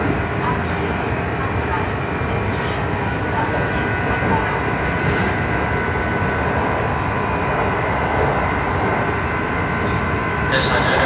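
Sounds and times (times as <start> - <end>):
wheel on rail rumble: 0.0 - 11.0
electric train motor whine: 2.6 - 11.0.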